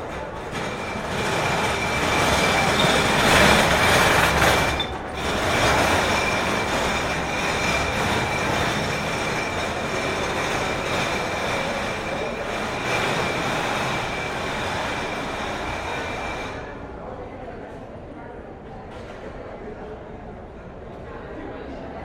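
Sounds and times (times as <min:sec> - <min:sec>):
wheels squealing: 0:00.0 - 0:16.7
subway train rumble: 0:00.0 - 0:22.0.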